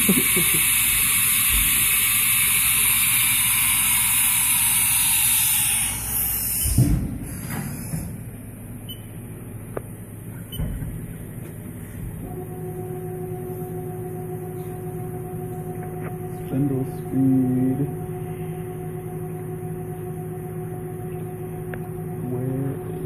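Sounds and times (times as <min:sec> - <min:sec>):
loud steady hiss: 0:00.0 - 0:06.8
machine hum: 0:00.0 - 0:23.0
thump: 0:06.6 - 0:08.1.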